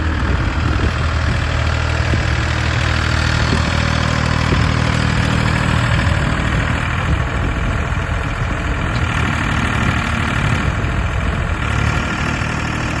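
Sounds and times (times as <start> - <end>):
small diesel engine running: 0.0 - 13.0.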